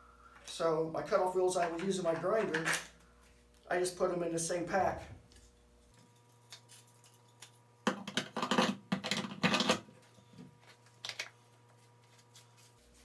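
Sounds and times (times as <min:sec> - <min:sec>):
grinder discs clicking in plastic pack: 0:10.9 - 0:11.3.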